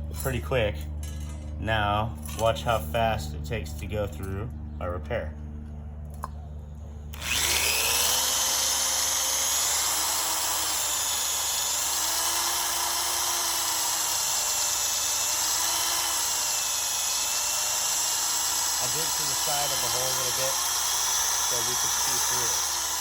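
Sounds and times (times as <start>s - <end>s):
electric drill motor whine: 7.1s - 23.0s.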